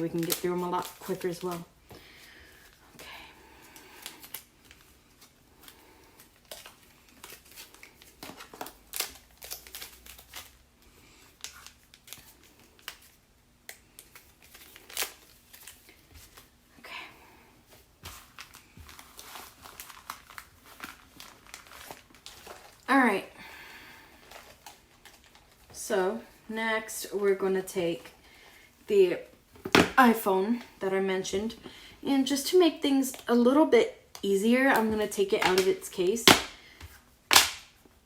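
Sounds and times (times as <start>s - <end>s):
wrapper packets tearing: 0.0s - 1.7s, 3.7s - 16.0s, 18.2s - 22.9s.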